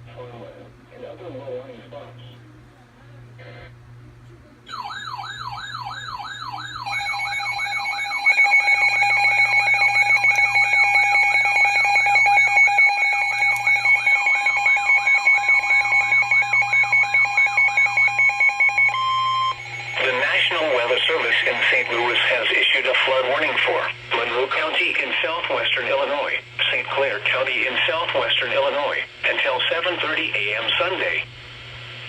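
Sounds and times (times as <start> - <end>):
warbling electronic alarm tone: 4.7 - 23.2
steady pulsing alarm tones: 4.7 - 31.1.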